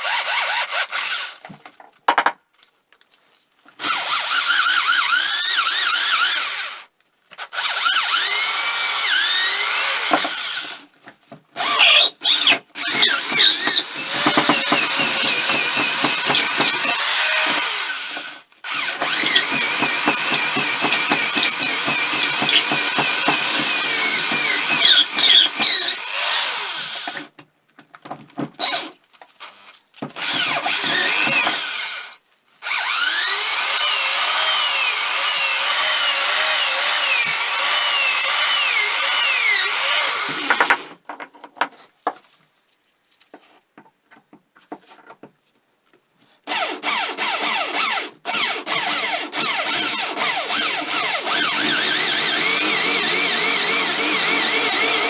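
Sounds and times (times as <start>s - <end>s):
electric power tool whining: 11.6s - 27.3s, 46.5s - 55.0s.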